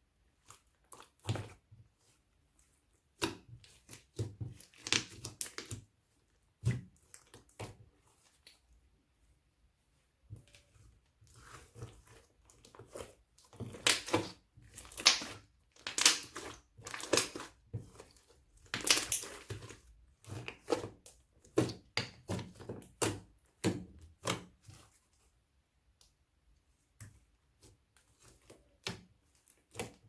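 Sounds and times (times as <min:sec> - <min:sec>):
crunchy slime crackling and popping: 0:13.8 - 0:17.6, 0:18.6 - 0:19.6.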